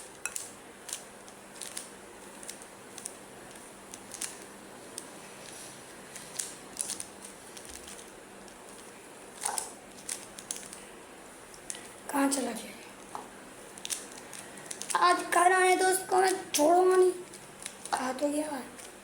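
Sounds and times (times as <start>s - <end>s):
plastic puzzle cube clicking: 0.3s - 1.0s, 1.6s - 4.4s.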